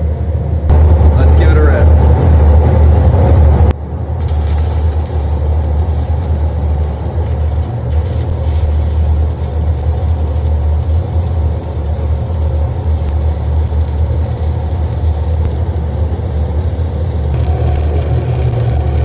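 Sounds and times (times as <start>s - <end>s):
low hum: 0.0s - 19.0s
welding arc crackling: 4.2s - 19.0s.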